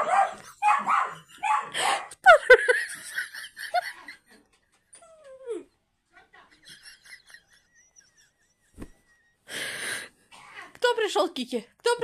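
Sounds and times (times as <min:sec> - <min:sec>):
dog barking and yipping: 0:00.0 - 0:02.0.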